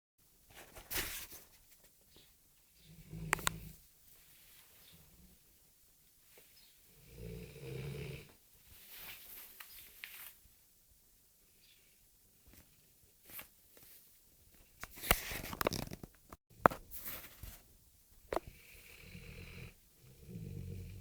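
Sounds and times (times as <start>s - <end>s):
dog snoring: 6.9s - 8.4s, 18.4s - 21.0s.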